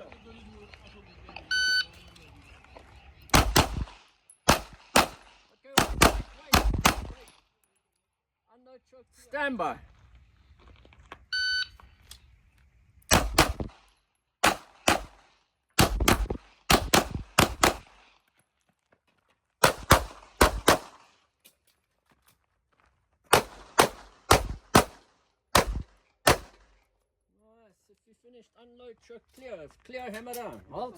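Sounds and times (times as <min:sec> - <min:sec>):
pistol shots: 0:03.3 - 0:07.3, 0:13.1 - 0:18.0, 0:19.6 - 0:21.1, 0:23.3 - 0:26.7.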